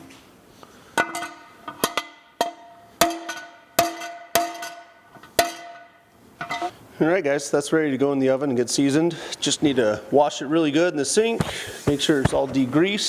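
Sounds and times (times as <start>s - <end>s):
hammer striking steel pan: 1.1s - 6.0s.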